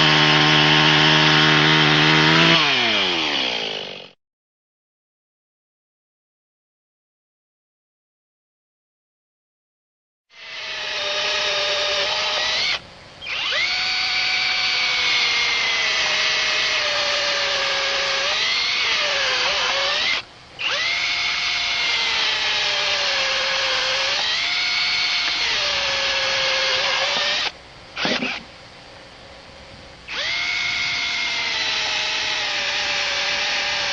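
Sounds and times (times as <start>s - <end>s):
chainsaw cutting log: 0.0s - 4.2s, 10.4s - 28.5s, 30.1s - 33.9s.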